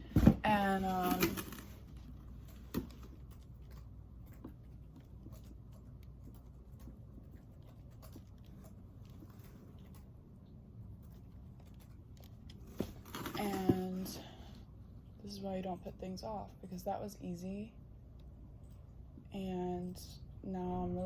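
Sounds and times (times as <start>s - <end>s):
objects being handled: 0.0s - 5.6s, 11.7s - 14.2s
low room hum: 0.0s - 21.0s.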